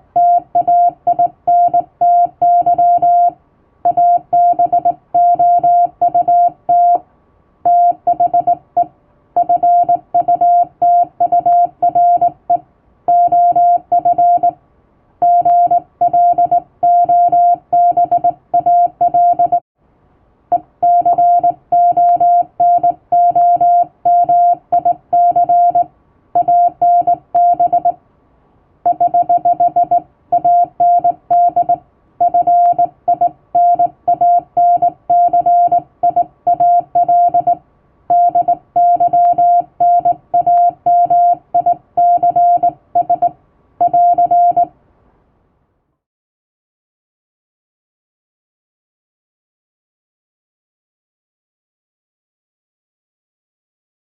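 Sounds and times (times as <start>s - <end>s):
morse code tones: 0.2s - 7.0s, 7.7s - 14.6s, 15.2s - 19.6s, 20.5s - 28.0s, 28.9s - 44.7s.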